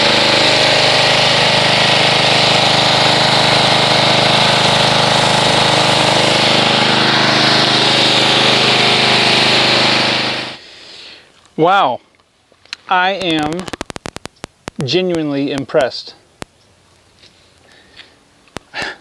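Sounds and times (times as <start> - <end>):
pressure washer spray hissing: 0.0 - 10.6.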